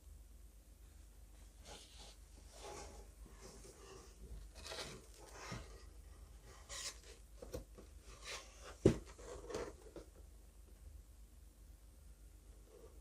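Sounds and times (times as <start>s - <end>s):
rustling and scraping handling noise: 1.4s - 10.3s.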